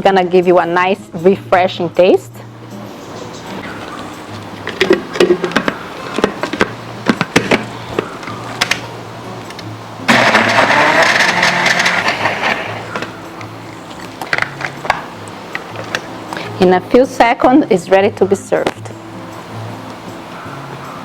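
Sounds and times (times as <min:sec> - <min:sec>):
background music: 0:00.0 - 0:21.0
blender blending ice: 0:10.1 - 0:12.9.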